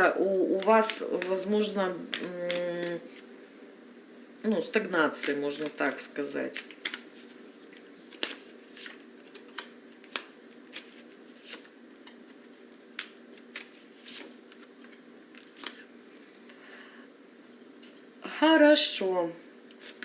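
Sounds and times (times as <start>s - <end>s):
faint steady hum: 0.0s - 20.0s
cards being shuffled: 0.5s - 3.3s, 5.1s - 15.9s.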